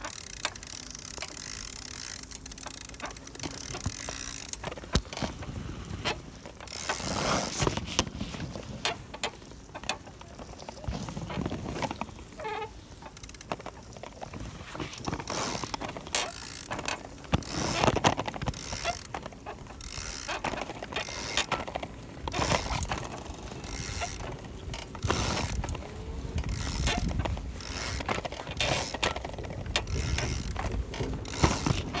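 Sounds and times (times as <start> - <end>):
mobility aid squeaking and creaking: 9.8 - 13.4, 15.1 - 23.0, 23.6 - 32.0.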